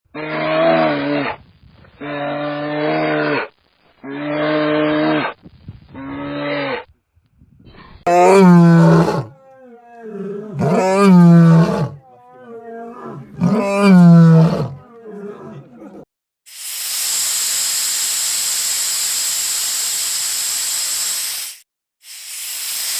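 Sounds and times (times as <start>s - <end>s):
large predator roaring: 8.1s - 16.1s.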